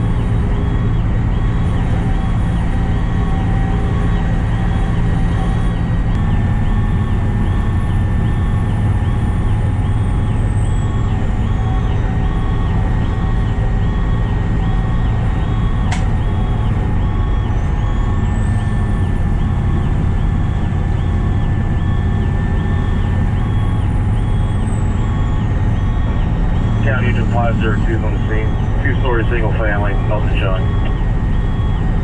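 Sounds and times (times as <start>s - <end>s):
diesel engine drone: 0.0s - 32.0s
siren wailing: 0.0s - 32.0s
short beeps: 21.9s - 31.9s.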